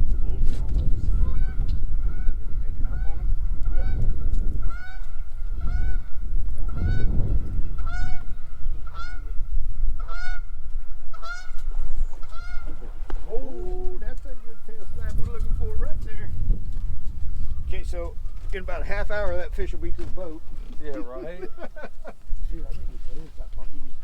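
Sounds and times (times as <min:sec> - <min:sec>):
goose honking: 0:04.6 - 0:07.1, 0:07.7 - 0:09.4, 0:10.0 - 0:12.9.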